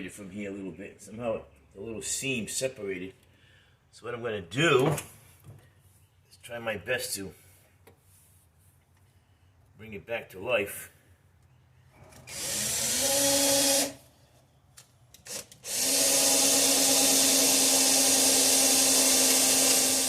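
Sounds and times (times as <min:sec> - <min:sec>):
electric drill running: 0:12.3 - 0:14.0, 0:15.3 - 0:20.0.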